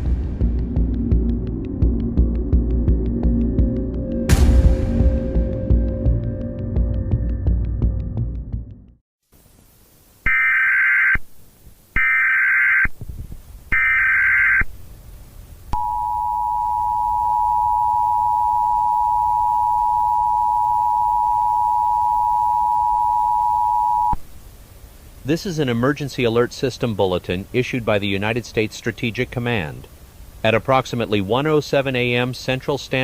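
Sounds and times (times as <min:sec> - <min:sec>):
buzzy digital data bursts: 0:10.2 - 0:11.2
two-tone attention signal: 0:15.8 - 0:24.2.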